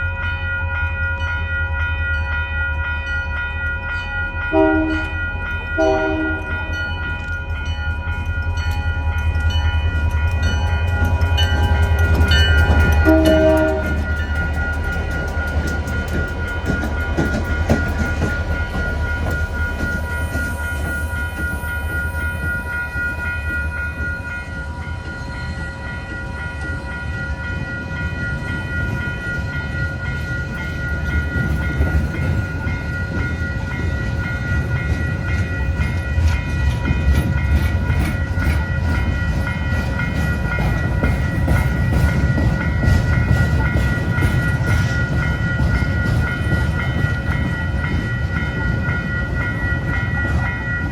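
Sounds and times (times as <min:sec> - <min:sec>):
high-pitched rail tones: 0:00.0 - 0:50.9
train rumbling past: 0:00.0 - 0:50.9
train wheel clicks: 0:06.4 - 0:24.4, 0:30.0 - 0:50.9.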